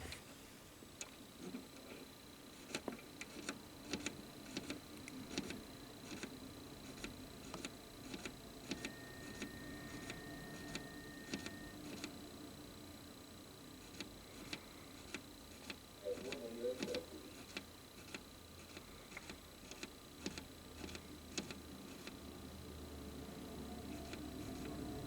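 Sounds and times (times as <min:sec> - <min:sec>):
faint irregular clicks and taps: 0:02.6 - 0:06.3, 0:13.9 - 0:15.8, 0:16.8 - 0:22.2
faint high electronic whine: 0:03.6 - 0:17.4, 0:22.2 - 0:25.0
faint steady tone: 0:07.3 - 0:15.1.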